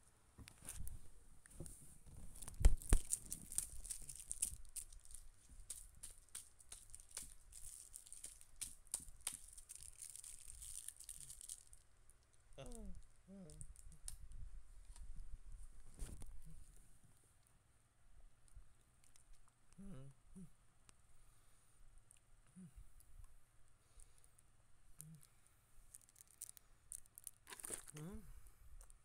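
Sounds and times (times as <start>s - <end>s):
rustling and crinkling: 0.4s - 12.4s, 13.6s - 17.5s, 23.9s - 28.0s.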